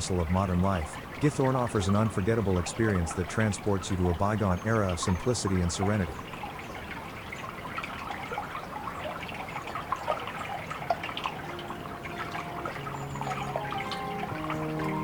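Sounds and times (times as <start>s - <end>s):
water trickling and dripping: 0.0s - 15.0s
sustained music notes: 11.1s - 15.0s.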